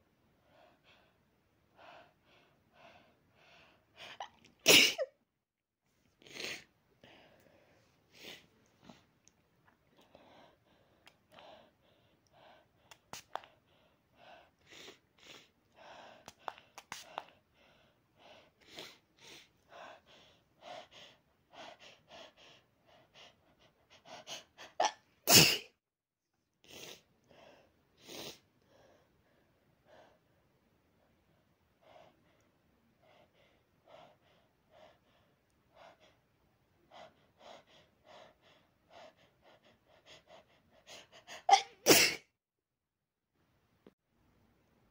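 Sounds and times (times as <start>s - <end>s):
person breathing quietly: 0.4s - 4.2s, 6.2s - 9.2s, 9.9s - 24.8s, 26.6s - 41.6s
person sneezing: 4.2s - 5.1s, 24.8s - 25.7s, 41.4s - 42.3s.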